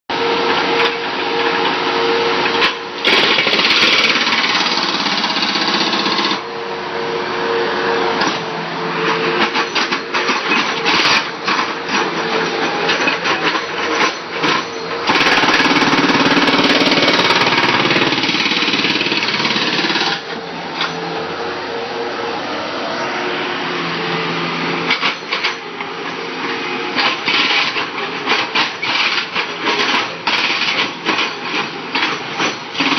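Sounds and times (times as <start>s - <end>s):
jackhammer breaking concrete: 2.6s - 6.4s, 9.4s - 20.3s, 27.0s - 32.9s
steady hum: 6.4s - 9.5s, 12.3s - 27.0s.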